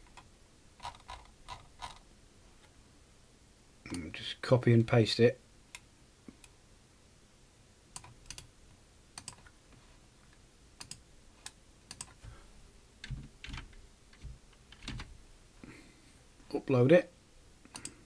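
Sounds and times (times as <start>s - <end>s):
keyboard and mouse clicks: 0.0s - 2.0s, 8.0s - 8.5s, 9.2s - 9.5s, 10.8s - 12.3s, 13.0s - 15.1s, 17.7s - 18.0s.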